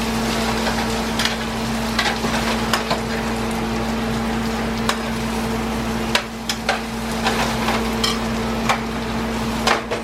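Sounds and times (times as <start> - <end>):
food sizzling in a pan: 0.0 - 10.0.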